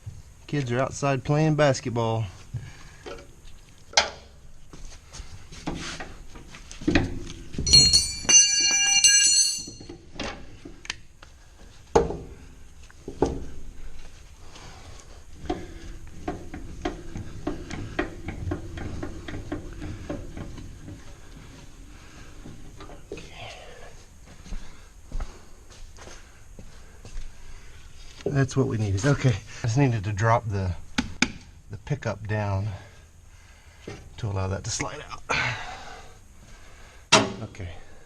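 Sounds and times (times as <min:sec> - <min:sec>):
metal knocking and clanking: 0:06.8 - 0:10.5, 0:15.4 - 0:21.2
loud ringing metal clang: 0:07.6 - 0:09.9.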